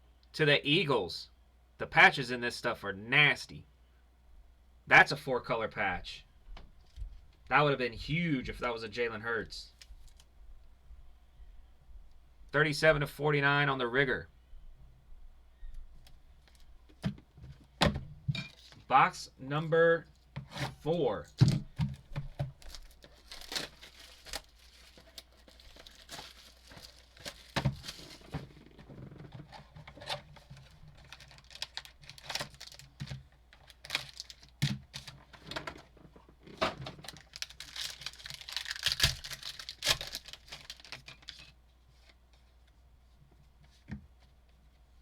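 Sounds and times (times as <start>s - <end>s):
wrapping tearing and crinkling: 22.4s - 35.3s, 36.9s - 41.6s.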